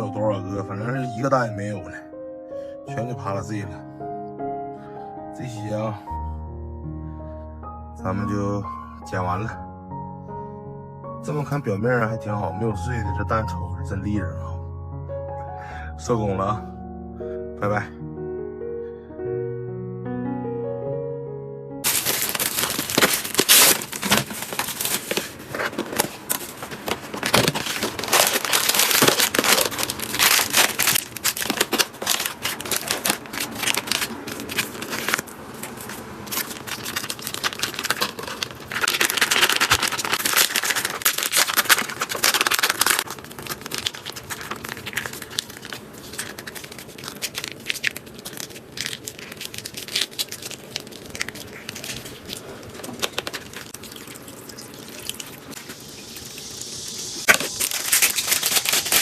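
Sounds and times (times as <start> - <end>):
plastic packaging crinkling and tearing: 21.8 - 59.0.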